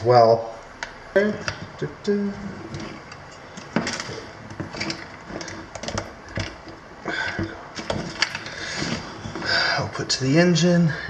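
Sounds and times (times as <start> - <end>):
plastic connectors handled: 2.6 - 9.5.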